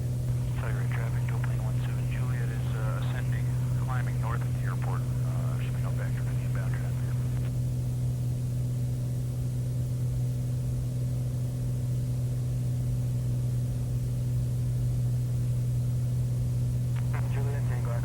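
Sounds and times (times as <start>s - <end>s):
propeller aircraft engine droning: 0.0s - 18.0s.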